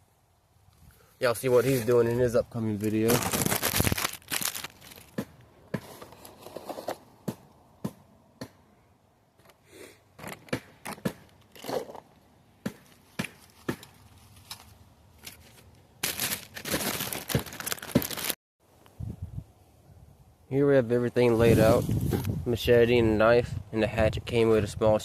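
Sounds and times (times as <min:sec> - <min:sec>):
plastic packaging crinkling: 0:02.8 - 0:05.2, 0:14.2 - 0:18.4.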